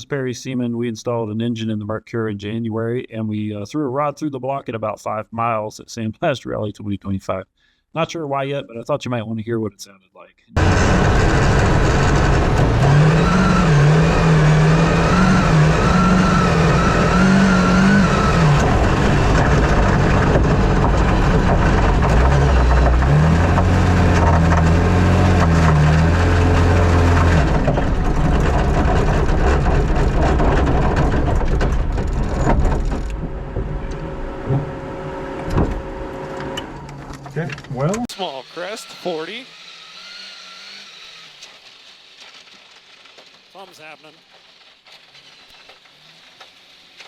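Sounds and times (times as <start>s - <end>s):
rally car engine revving: 10.6s - 39.2s
road and gravel noise: 10.6s - 47.0s.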